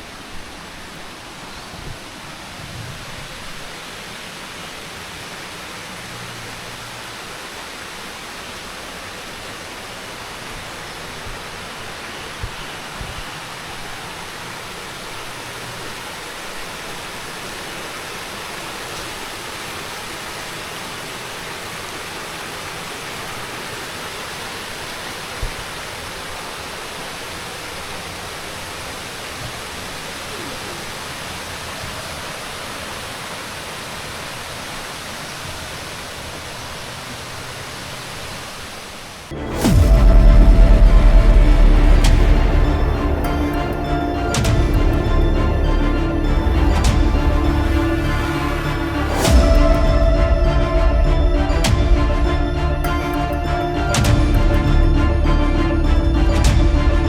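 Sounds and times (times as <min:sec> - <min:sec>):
stream flowing: 0:00.0 - 0:57.0
soft low thumps: 0:39.6 - 0:48.3, 0:49.2 - 0:57.0.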